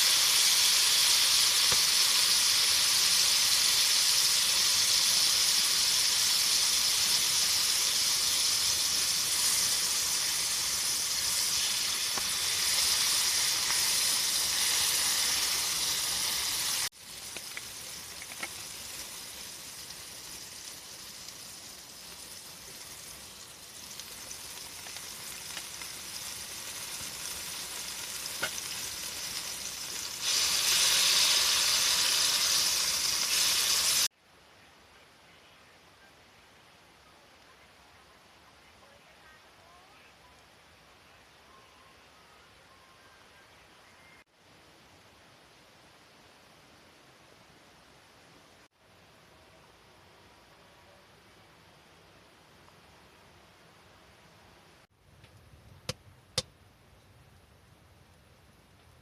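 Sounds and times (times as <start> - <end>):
food sizzling on a stove: 0.0 - 34.2
faint crackles: 4.5 - 34.0.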